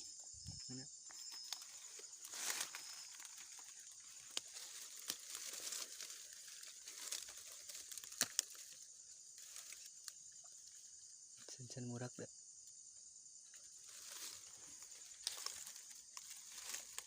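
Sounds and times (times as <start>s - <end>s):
insects chirping: 0.0s - 17.0s
rustling and crinkling: 1.1s - 10.2s, 13.5s - 17.0s.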